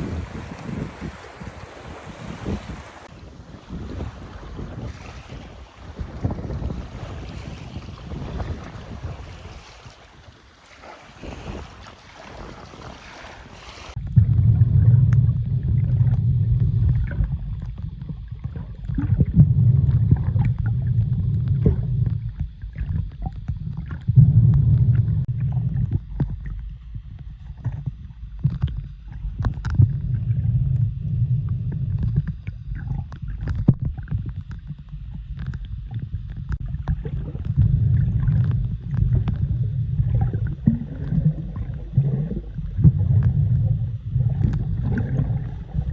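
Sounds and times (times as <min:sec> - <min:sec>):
muffled rumble of moving water: 0:00.0 - 0:45.9
small clicks and gurgles: 0:13.9 - 0:45.9.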